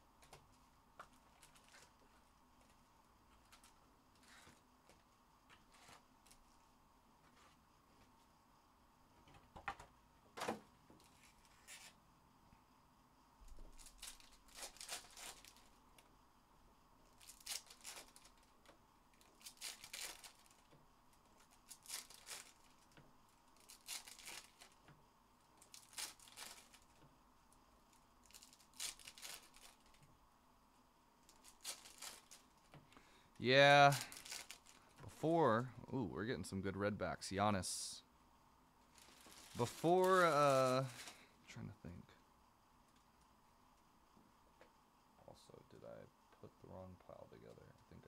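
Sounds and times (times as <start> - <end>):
card packs tearing and rustling: 13.8 - 15.7, 17.2 - 18.4, 19.3 - 20.6, 21.6 - 22.9, 23.6 - 24.8, 25.6 - 26.9, 28.2 - 30.0, 31.4 - 32.4, 33.4 - 35.6, 38.9 - 41.2.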